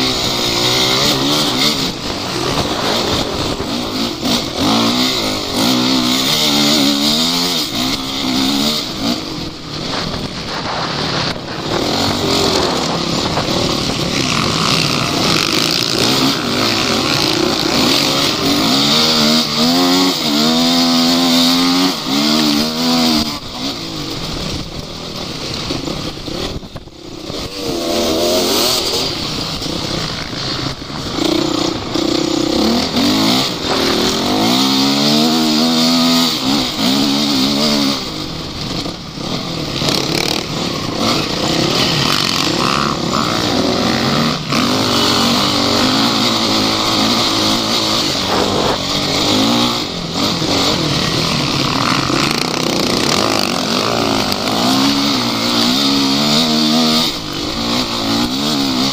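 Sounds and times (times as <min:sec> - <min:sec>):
off-road engines revving: 0:00.0 - 0:58.9.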